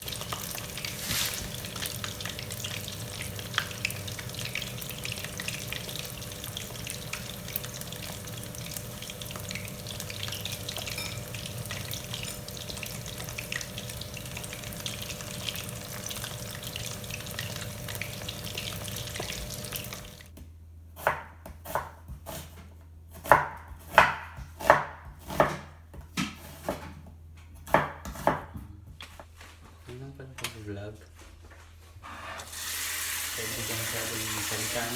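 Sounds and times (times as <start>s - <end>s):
food sizzling in hot oil: 0.0s - 20.3s, 32.4s - 34.9s
knife chopping on cutting board: 21.0s - 28.7s.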